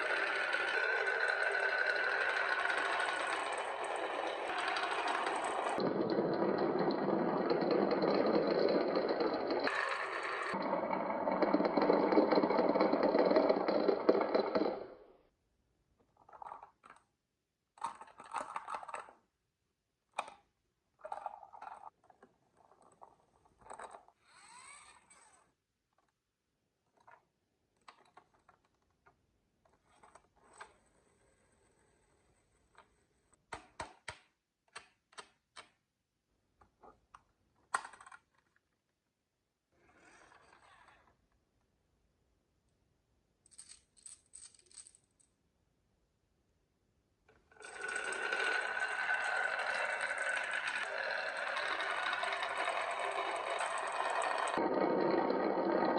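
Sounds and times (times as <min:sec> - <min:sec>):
marbles clicking and clacking: 0:00.0 - 0:15.0, 0:47.6 - 0:55.9
marbles rolling on wooden run: 0:00.0 - 0:15.1, 0:47.5 - 0:55.9.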